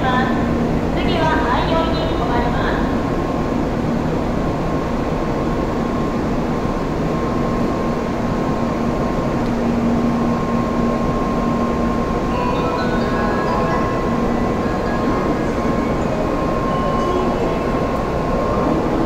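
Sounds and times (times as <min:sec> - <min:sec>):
train standing humming: 0:00.0 - 0:19.0
faint high tone: 0:12.3 - 0:19.0.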